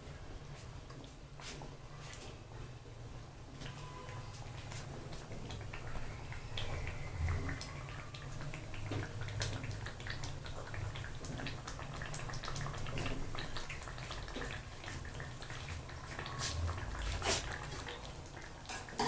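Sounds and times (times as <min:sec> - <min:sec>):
curry bubbling in a pot: 0:00.1 - 0:19.0.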